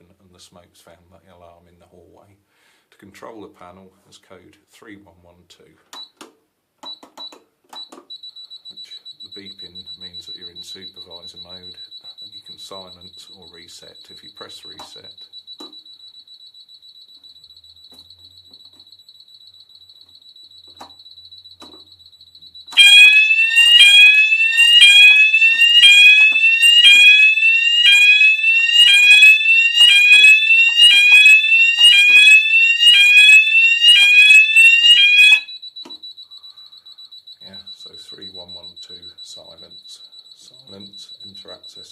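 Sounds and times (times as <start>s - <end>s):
alarm panel buzzer beeping rapidly: 8.1s - 41.9s
smoke alarm falling sweep: 21.3s - 35.6s.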